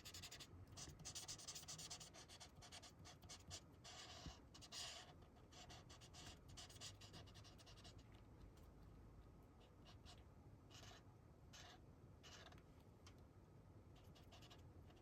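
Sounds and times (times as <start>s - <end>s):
marker scratching on paper: 0.0s - 8.0s, 9.6s - 12.6s, 14.0s - 15.0s.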